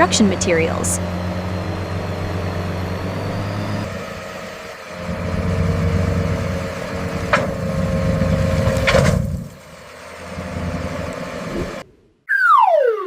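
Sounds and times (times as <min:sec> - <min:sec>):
truck engine running: 0:00.0 - 0:11.8
steady whine: 0:11.5 - 0:13.0.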